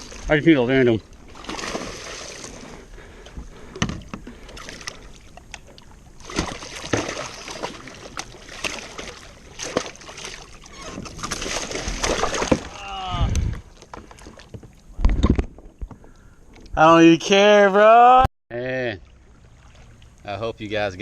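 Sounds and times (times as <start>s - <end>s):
splashes: 0.0s - 0.4s, 1.1s - 2.8s, 4.4s - 14.6s, 19.0s - 20.2s
water sloshing around a kayak: 0.0s - 16.8s, 19.0s - 20.3s.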